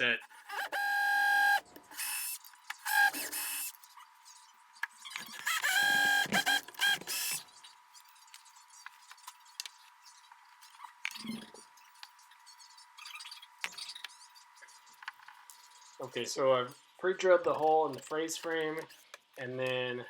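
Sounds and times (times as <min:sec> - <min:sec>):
cordless drill motor whining: 0:00.3 - 0:03.8, 0:05.1 - 0:07.4.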